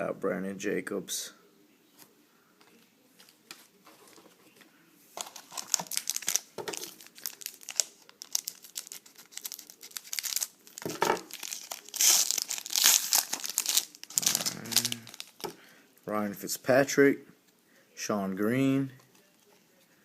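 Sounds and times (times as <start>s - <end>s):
wrapper crinkling and tearing: 5.2s - 15.6s.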